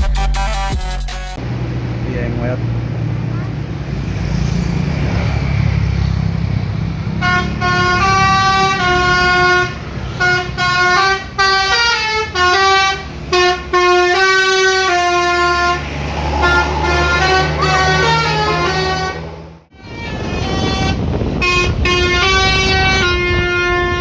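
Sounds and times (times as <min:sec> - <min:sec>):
bus engine rumbling: 0:01.3 - 0:24.0
multi-tone horn playing a tune: 0:07.2 - 0:19.3, 0:19.9 - 0:24.0.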